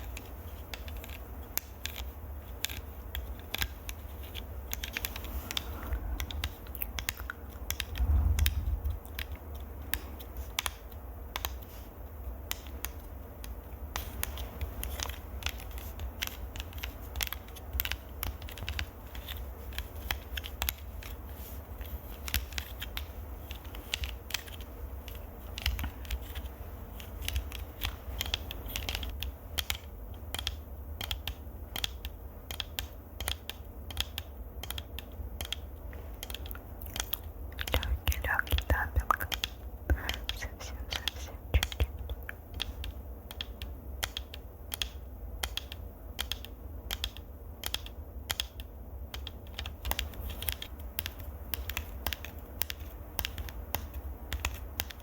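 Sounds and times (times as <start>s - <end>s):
crisp clicks and crackles: 0.0s - 55.0s
low rumble: 7.9s - 9.1s.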